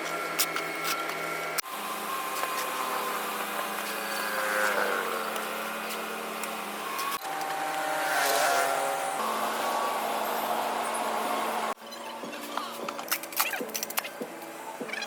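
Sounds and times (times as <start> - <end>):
engine running: 0.0 - 11.8.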